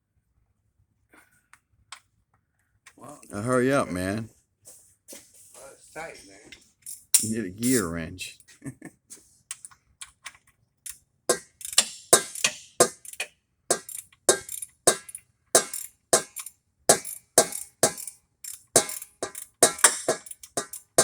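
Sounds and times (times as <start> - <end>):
ratchet wrench clicking: 10.8 - 21.0.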